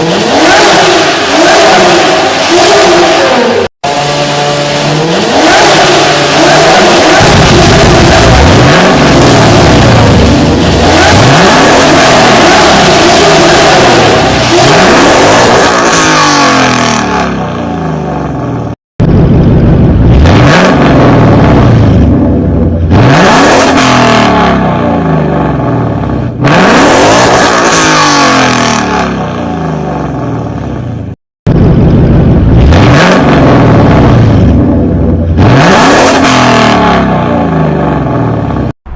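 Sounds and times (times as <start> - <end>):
car engine revving hard: 0.0 - 18.8, 20.0 - 30.6, 31.6 - 38.9.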